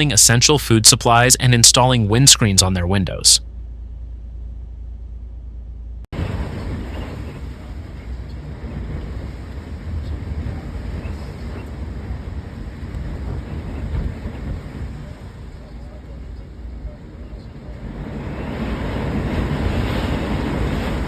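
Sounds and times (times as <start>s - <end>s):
storm wind buffeting microphone: 6.2s - 21.0s.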